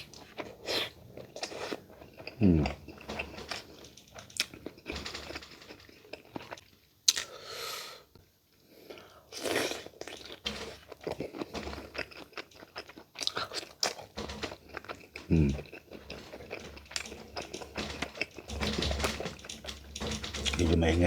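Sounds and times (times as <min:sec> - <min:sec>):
wet chewing and crunching: 0:00.0 - 0:07.3, 0:09.0 - 0:21.0.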